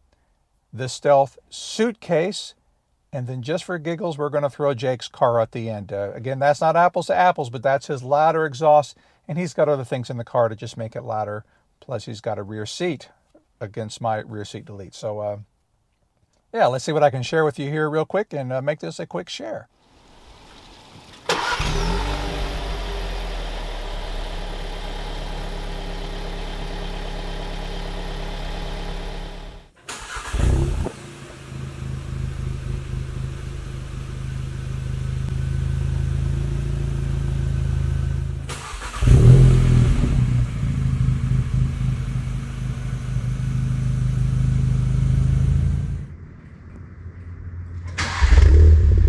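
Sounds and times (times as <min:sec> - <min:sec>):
car engine running: 0:20.0 - 0:29.7.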